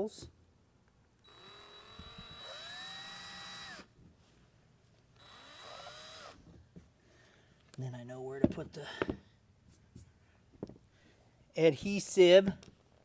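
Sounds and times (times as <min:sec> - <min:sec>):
cordless drill motor whine: 0:01.2 - 0:03.9, 0:05.2 - 0:06.4.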